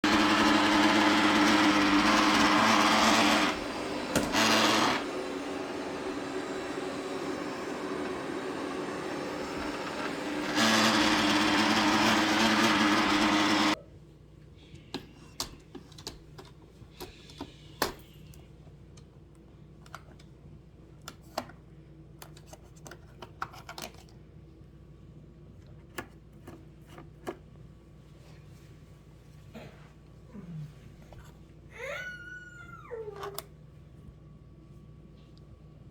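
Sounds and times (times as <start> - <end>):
robot vacuum grinding: 0.0 - 13.8.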